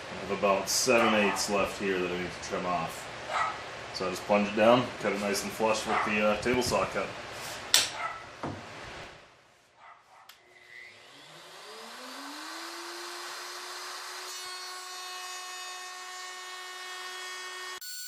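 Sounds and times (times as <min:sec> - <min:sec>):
router motor whining: 0:10.5 - 0:18.0.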